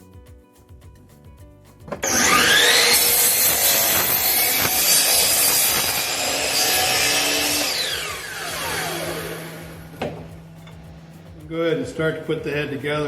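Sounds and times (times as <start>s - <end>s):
power saw cutting wood: 2.0s - 10.3s.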